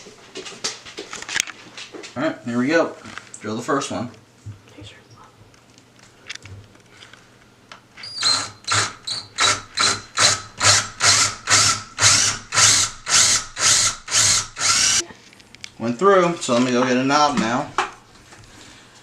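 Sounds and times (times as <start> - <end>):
power drill boring through wood: 8.0 - 15.0.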